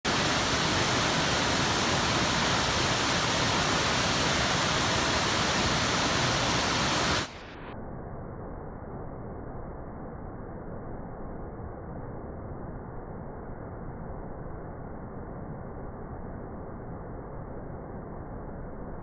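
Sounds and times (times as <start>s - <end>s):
waterfall rushing: 0.0s - 7.4s.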